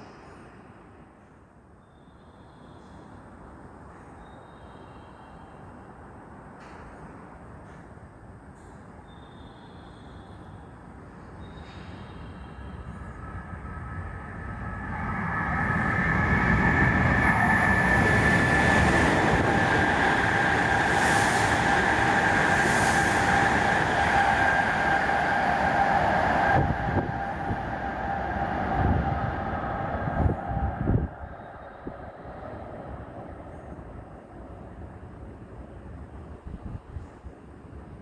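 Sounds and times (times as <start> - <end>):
high-speed train passing: 9.6 - 38.0
wind buffeting microphone: 14.8 - 34.2.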